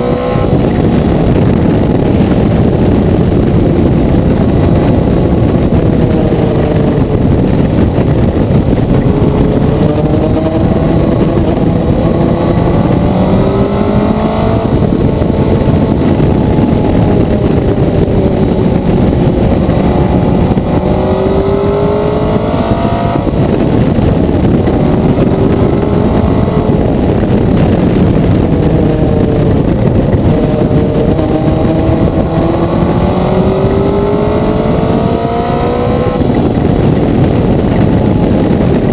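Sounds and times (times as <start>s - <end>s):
loud steady rush of noise: 0.0s - 38.9s
motorcycle engine accelerating: 0.0s - 38.9s.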